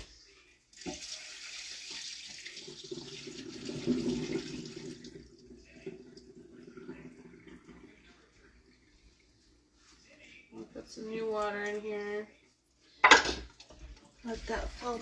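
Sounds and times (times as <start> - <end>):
water pouring into a sink: 0.0 - 9.9.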